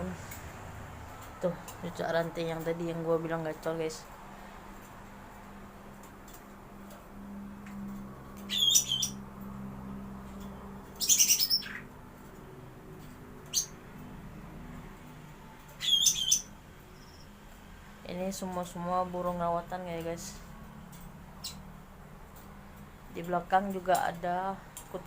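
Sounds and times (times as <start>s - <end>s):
low steady hum: 0.0s - 25.0s
bird calling in sharp bursts: 8.4s - 9.2s, 15.8s - 16.5s.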